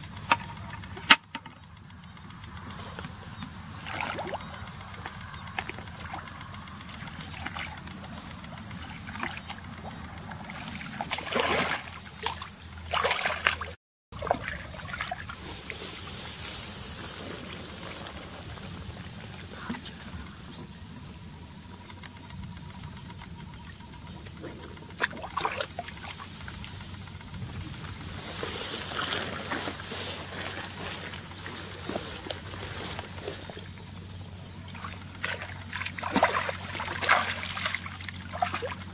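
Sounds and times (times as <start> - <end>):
water trickling and splashing: 10.4 - 15.8, 34.7 - 38.9.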